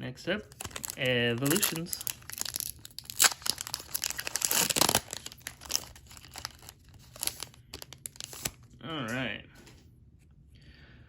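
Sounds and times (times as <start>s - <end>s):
foil pack ripping: 0.4s - 8.7s
foil pack crinkling: 0.4s - 8.8s.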